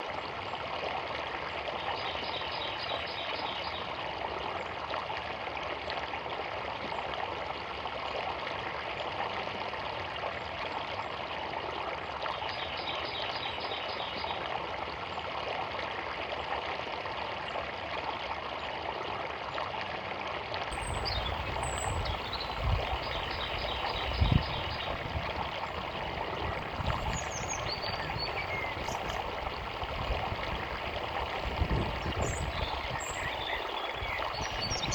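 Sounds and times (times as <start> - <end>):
bird singing fast trill: 20.7 - 29.7, 31.7 - 34.9
birds chirping: 20.7 - 34.9
river running: 20.7 - 34.9.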